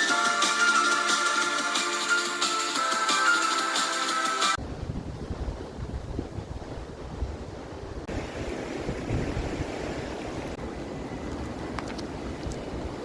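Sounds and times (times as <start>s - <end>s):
background music: 0.0s - 4.6s
wind buffeting microphone: 4.6s - 13.0s.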